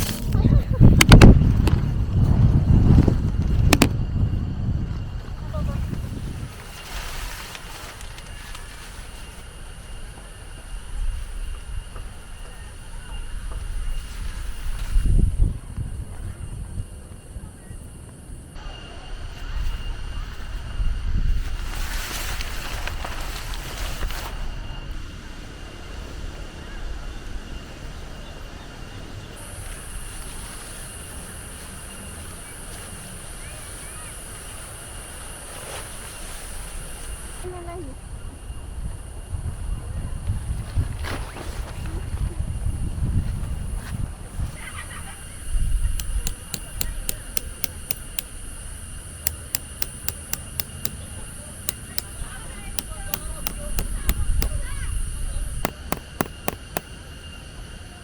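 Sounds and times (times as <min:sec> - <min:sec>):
wind rumbling on microphone: 0:00.0 - 0:09.8, 0:10.8 - 0:17.9, 0:38.2 - 0:44.6
regular sharp ticks: 0:45.9 - 0:48.6, 0:49.2 - 0:54.6, 0:55.6 - 0:56.9.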